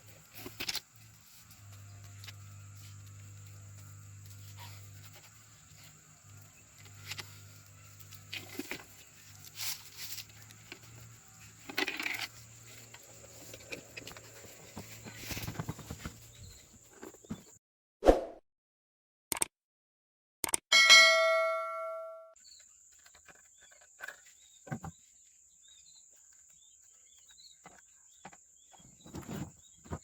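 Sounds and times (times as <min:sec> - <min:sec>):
sharp knock with a ring: 0:20.8 - 0:22.3.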